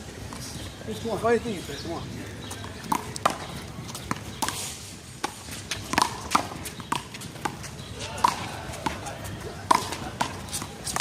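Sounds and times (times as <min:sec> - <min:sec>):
handball smacking off wall and pavement: 0:05.2 - 0:11.0.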